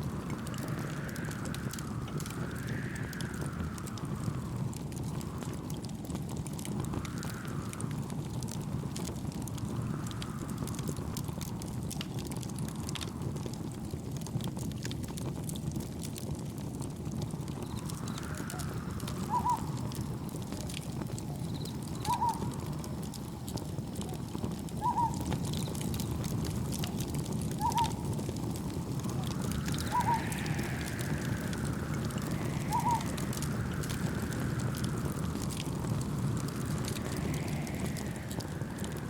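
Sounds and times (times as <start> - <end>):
gentle waves: 0.0 - 5.8, 6.7 - 8.6, 17.6 - 39.0
wind rushing: 0.0 - 5.8, 17.4 - 21.0, 27.7 - 39.0
campfire crackling: 0.0 - 39.0.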